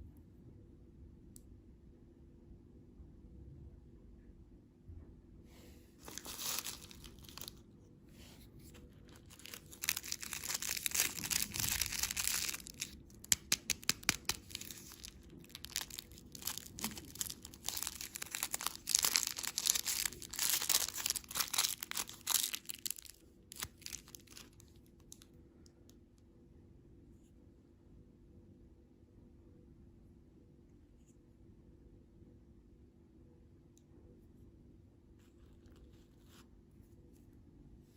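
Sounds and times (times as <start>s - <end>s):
plastic packaging crinkling and tearing: 6.0s - 7.6s, 8.6s - 25.2s.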